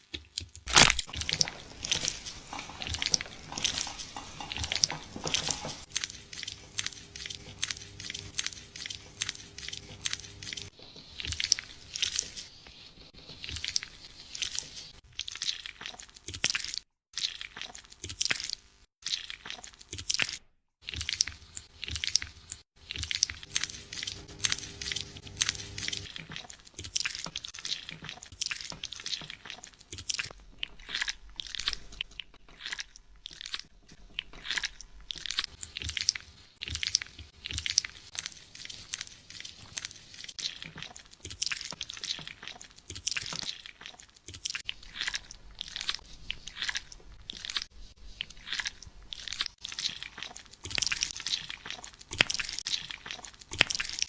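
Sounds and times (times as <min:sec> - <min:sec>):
fingers scratching scalp and hair: 0:00.7 - 0:15.0, 0:21.0 - 0:26.3.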